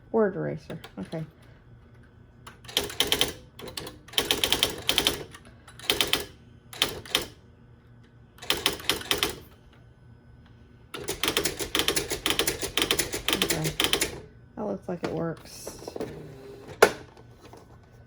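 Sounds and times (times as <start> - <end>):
electronic typewriter printing: 2.5 - 7.4, 8.4 - 9.6, 11.0 - 14.2, 15.2 - 17.6.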